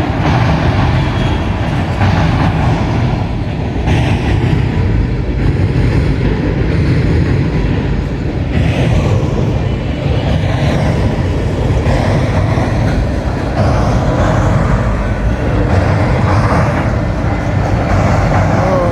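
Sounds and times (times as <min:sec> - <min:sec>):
train rumbling on rails: 0:00.0 - 0:18.9.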